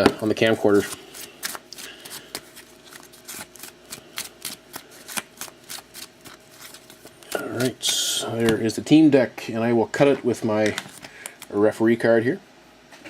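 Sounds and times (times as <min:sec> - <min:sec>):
cards being shuffled: 0:00.0 - 0:08.6.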